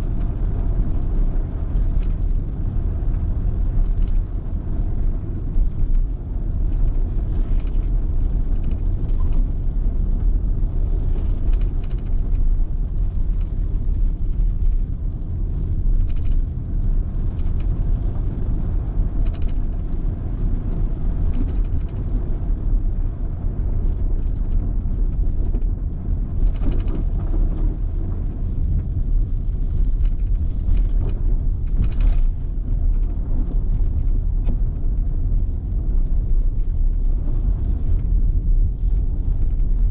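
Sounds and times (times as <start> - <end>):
car engine and tyres rumble: 0.0 - 39.9
brief clicks and rattles: 6.7 - 9.6, 11.2 - 12.5, 16.0 - 16.6, 19.1 - 19.8, 21.2 - 22.1, 26.3 - 27.6, 28.7 - 35.1.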